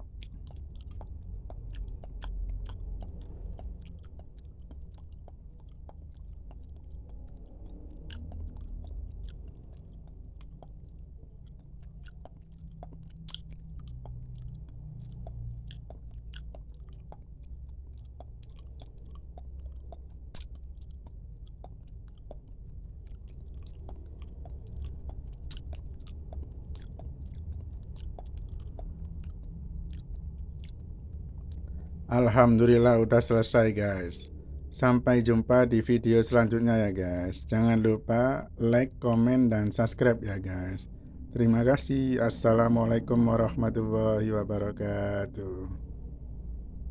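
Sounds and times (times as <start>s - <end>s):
chewing with wet mouth clicks: 0.0s - 46.9s
low steady rumble: 0.0s - 46.9s.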